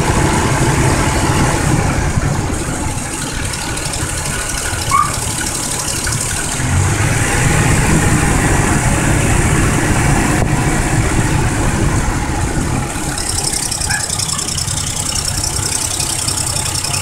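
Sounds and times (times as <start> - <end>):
car engine idling: 0.0 - 17.0
brief high squeak: 4.9 - 5.2, 13.8 - 14.5.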